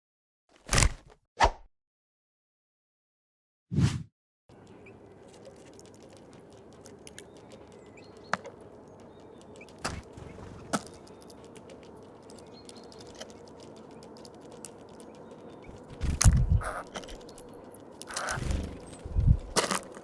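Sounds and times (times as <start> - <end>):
faint outdoor background: 3.7 - 20.0
beaks cracking seeds: 4.5 - 20.0.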